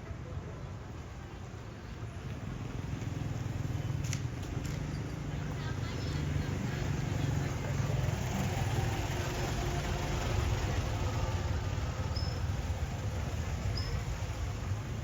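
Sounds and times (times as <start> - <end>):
vehicle engine rumble: 0.0 - 15.0.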